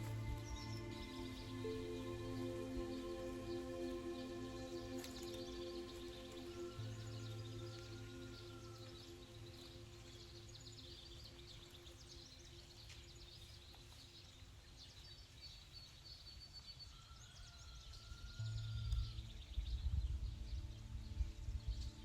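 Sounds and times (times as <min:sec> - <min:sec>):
low rumble: 0:00.0 - 0:12.1, 0:18.4 - 0:22.0
ambient music drone: 0:00.0 - 0:14.5, 0:18.0 - 0:22.0
small birds chirping: 0:00.0 - 0:22.0.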